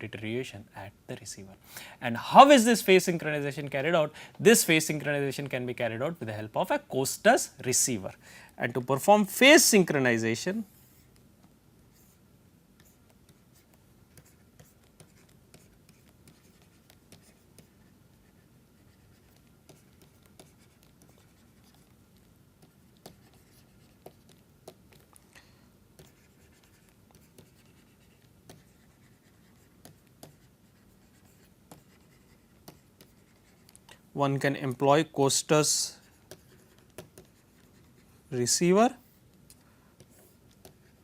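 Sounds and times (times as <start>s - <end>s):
quiet hiss: 0.0s - 41.0s
pen scratching on paper: 12.8s - 25.2s, 26.0s - 33.9s, 36.0s - 38.2s.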